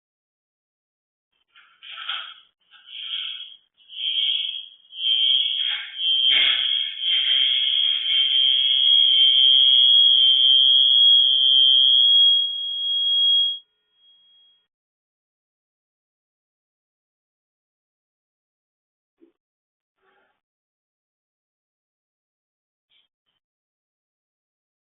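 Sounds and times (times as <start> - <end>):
electronic alarm beeping: 1.9 - 14.7.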